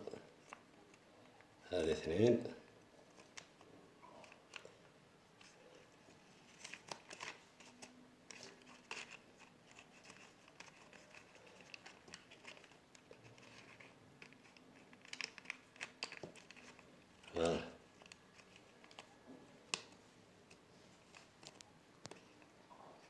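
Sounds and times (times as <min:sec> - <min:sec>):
scratchy rustling of wires: 0:02.9 - 0:23.0
plastic parts clicking: 0:06.6 - 0:17.4.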